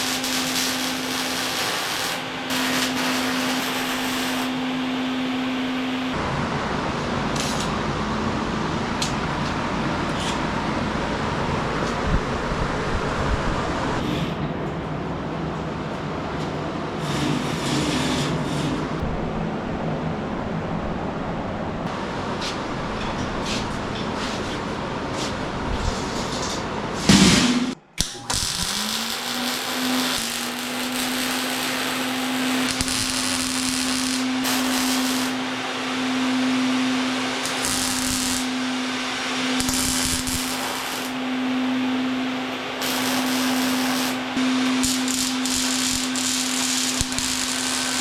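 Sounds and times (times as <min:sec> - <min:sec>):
tool hissing on metal: 0:00.0 - 0:04.6, 0:28.0 - 0:35.6, 0:37.4 - 0:41.2, 0:42.8 - 0:48.0
power tool motor running: 0:28.0 - 0:35.6, 0:37.4 - 0:38.8, 0:39.5 - 0:41.2, 0:42.8 - 0:48.0.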